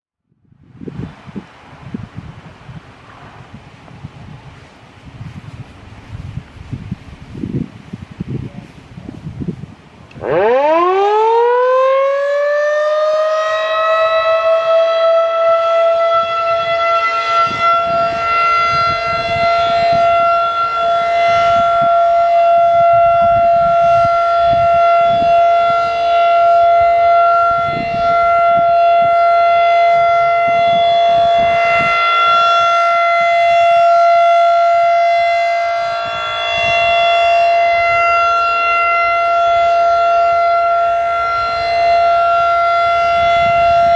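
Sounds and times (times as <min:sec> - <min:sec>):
warning siren steady tone: 0:10.1 - 0:43.9.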